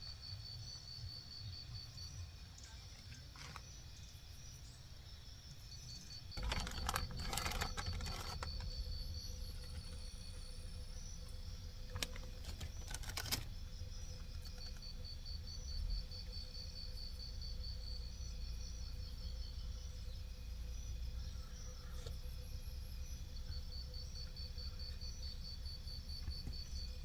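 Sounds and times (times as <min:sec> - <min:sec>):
cricket chirping trill: 0:00.0 - 0:27.0
hard objects clattering: 0:06.4 - 0:08.6.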